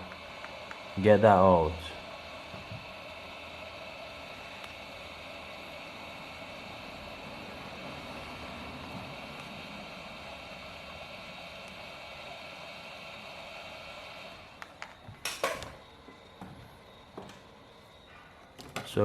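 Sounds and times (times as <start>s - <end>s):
hot-air gun blowing: 0.0s - 17.5s.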